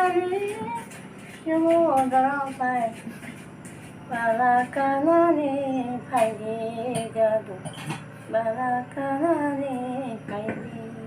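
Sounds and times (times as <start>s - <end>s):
woman singing: 0.0s - 3.1s, 4.1s - 11.0s.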